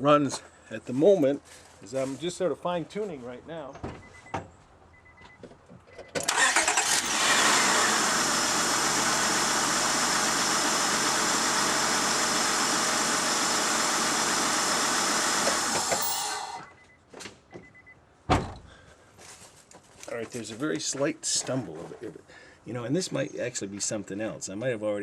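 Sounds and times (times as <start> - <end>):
car engine starting and idling: 6.1 - 16.8.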